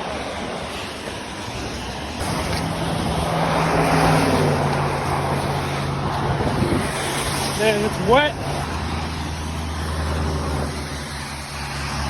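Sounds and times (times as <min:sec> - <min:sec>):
car engine hum: 0:00.0 - 0:12.0
rain: 0:00.0 - 0:12.0
wind on microphone: 0:01.5 - 0:11.0.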